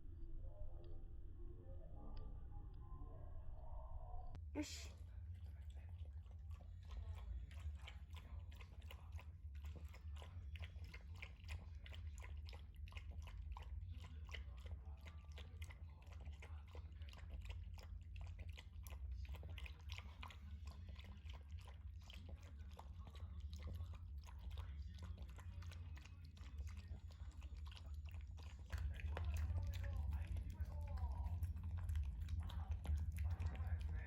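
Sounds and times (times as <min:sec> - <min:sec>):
low steady hum: 0:00.0 - 0:34.0
dog chewing and crunching: 0:05.3 - 0:34.0.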